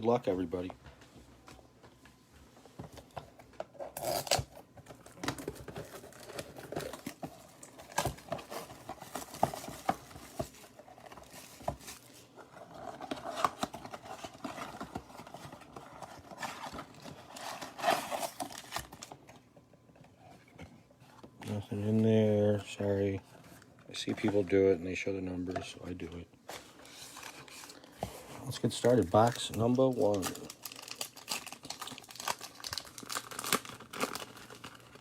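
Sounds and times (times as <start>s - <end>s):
plastic wrap crinkling and tearing: 3.6s - 19.2s, 26.8s - 35.0s.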